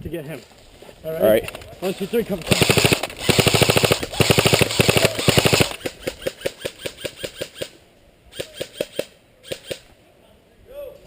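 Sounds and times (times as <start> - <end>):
airsoft rifle firing: 2.4 - 9.9.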